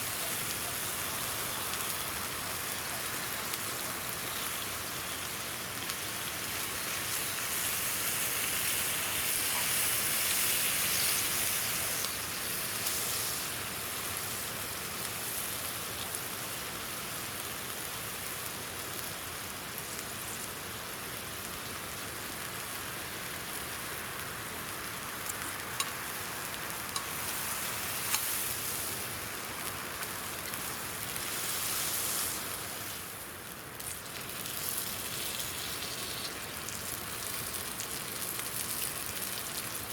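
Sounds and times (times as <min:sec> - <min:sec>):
fire crackles: 0:00.0 - 0:39.9
meat sizzling over a fire: 0:00.0 - 0:39.9.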